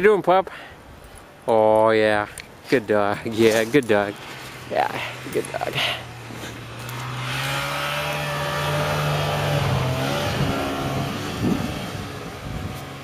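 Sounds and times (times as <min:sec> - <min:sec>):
vehicle engine running: 0:04.1 - 0:13.0.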